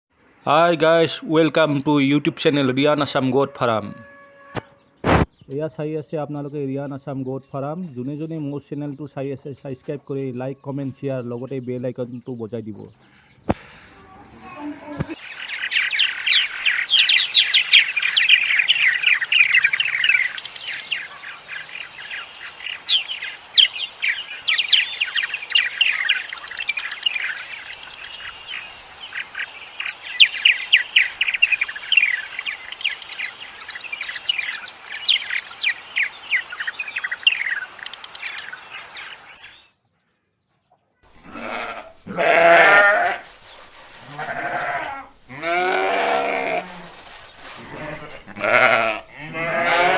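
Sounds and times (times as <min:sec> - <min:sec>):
small birds chirping: 0:15.0 - 0:39.7
goat bleating: 0:41.2 - 0:43.2, 0:44.0 - 0:46.9, 0:47.6 - 0:49.9.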